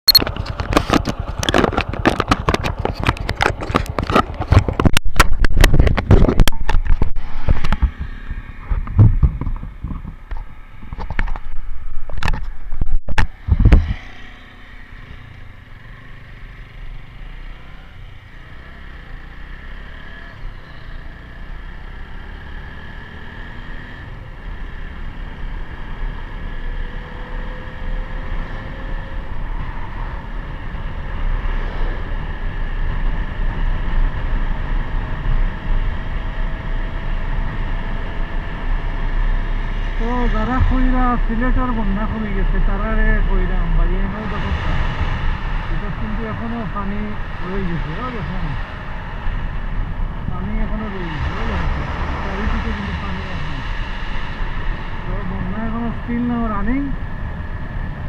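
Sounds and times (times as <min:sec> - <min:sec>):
motorcycle running: 0:00.1 - 0:58.0
motorcycle knocking and banging: 0:00.2 - 0:12.8.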